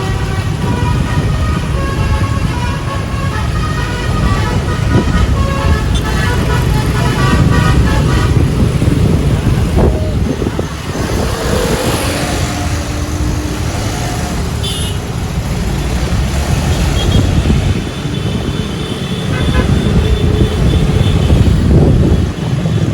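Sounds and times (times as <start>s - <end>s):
multi-tone musical bus horn: 0.0s - 9.9s, 14.6s - 15.1s, 17.0s - 21.6s
engine and road rumble: 0.0s - 22.9s.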